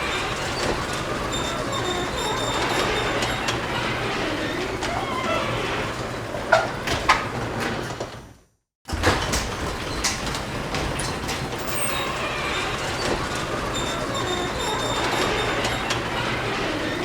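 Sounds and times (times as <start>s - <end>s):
garage door rattling on tracks: 0.0s - 17.0s
faint high squeal: 11.6s - 17.0s.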